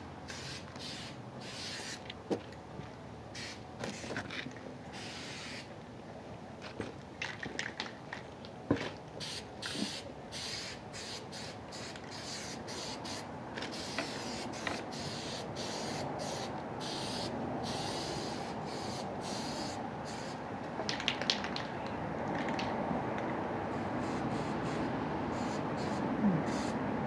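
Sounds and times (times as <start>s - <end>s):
spray paint can hissing: 0.3s - 2.0s, 3.4s - 4.2s, 5.0s - 5.7s, 9.2s - 20.4s, 23.7s - 26.8s.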